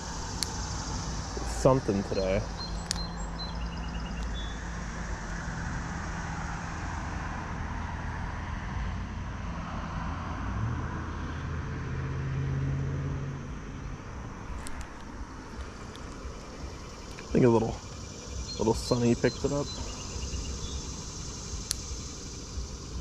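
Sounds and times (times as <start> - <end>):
faint clicks: 0.0 - 1.1, 2.5 - 4.4, 14.5 - 23.0
vehicle engine passing: 0.0 - 23.0.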